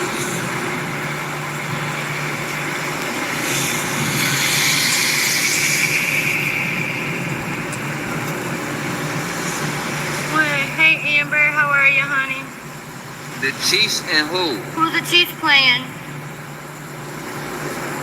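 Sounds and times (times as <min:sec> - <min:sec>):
loud hiss: 0:00.0 - 0:11.0
vehicle engine hum: 0:00.0 - 0:18.0.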